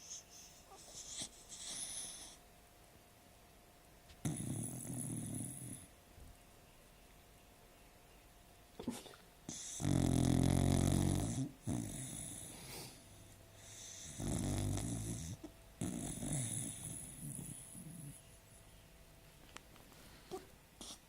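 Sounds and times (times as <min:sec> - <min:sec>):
dog snoring: 0:00.0 - 0:02.4, 0:04.2 - 0:06.0, 0:09.5 - 0:18.3, 0:20.3 - 0:21.0.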